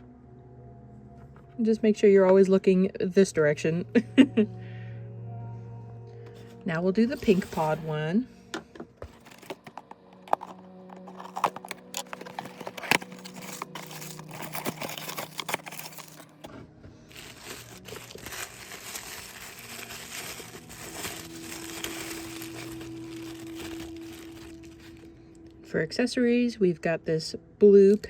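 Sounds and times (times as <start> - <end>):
packaging crinkling and tearing: 9.0 - 16.5, 17.1 - 25.5.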